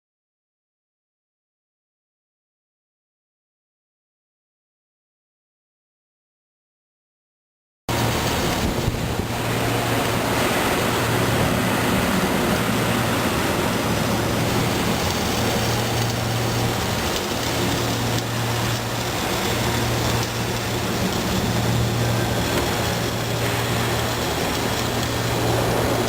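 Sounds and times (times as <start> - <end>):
low steady hum: 7.9 - 26.0
welding arc hissing: 7.9 - 26.0.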